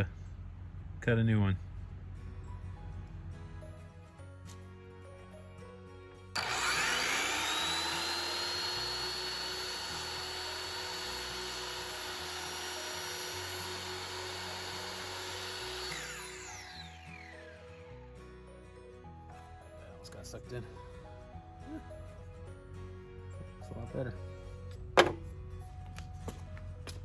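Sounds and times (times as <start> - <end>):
background music: 1.6 - 27.0
electric power tool motor whine: 6.4 - 18.0.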